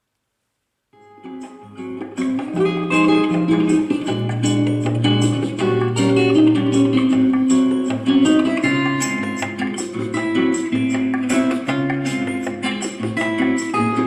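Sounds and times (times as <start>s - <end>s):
guitar music with bass line: 1.0s - 14.0s.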